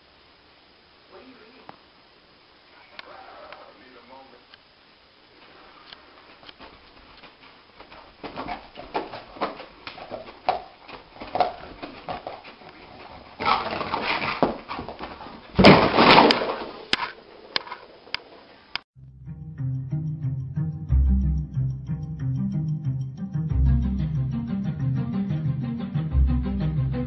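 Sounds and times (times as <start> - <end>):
knocks and scuffling: 6.2 - 18.4.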